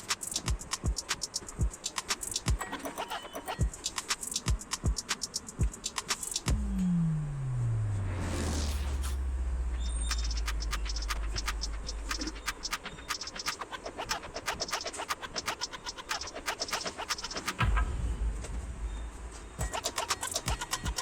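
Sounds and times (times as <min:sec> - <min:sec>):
quick clicking percussion: 0:00.0 - 0:06.6, 0:10.0 - 0:17.7, 0:19.6 - 0:21.0
electronic background music: 0:00.0 - 0:21.0
deep held bass note: 0:06.5 - 0:10.7.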